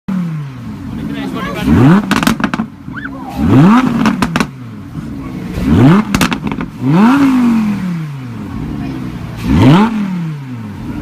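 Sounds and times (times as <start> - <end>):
car engine revving: 0.1 - 11.0
exhaust crackles and pops: 2.0 - 2.8, 3.5 - 4.6, 5.8 - 6.8.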